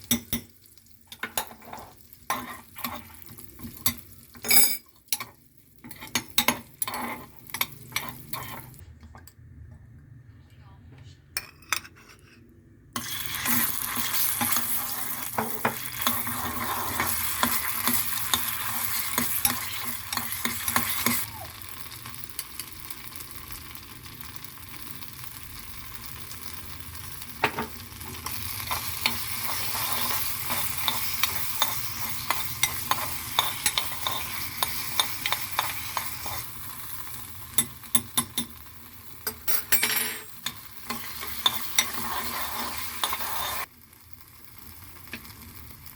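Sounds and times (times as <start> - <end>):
food sizzling in a pan: 0.0 - 8.8, 13.0 - 45.9
utensil stirring and clicking on pan: 0.0 - 8.8, 13.0 - 22.6, 27.2 - 43.7.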